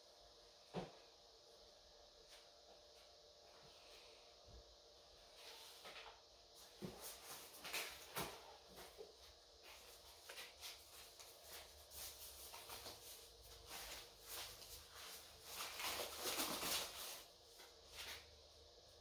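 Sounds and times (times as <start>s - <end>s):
packaging rustling and scraping: 9.8s - 18.3s.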